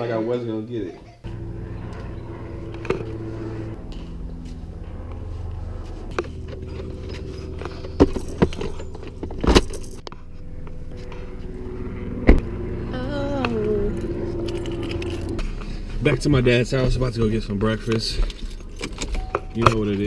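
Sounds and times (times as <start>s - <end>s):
car engine humming: 0.3s - 20.0s
keys jangling: 8.0s - 10.0s, 14.0s - 15.4s, 18.3s - 19.4s.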